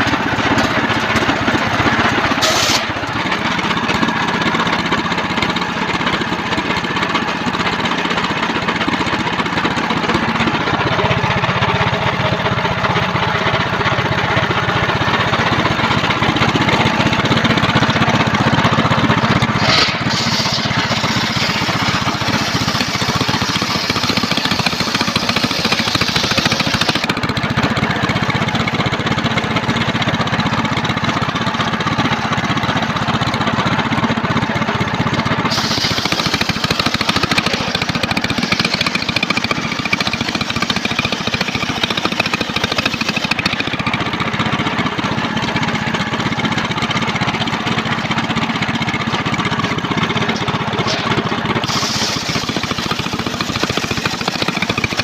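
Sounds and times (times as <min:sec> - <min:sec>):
circular saw cutting log: 0:02.2 - 0:06.1, 0:16.3 - 0:27.2, 0:35.5 - 0:44.0, 0:50.3 - 0:55.0.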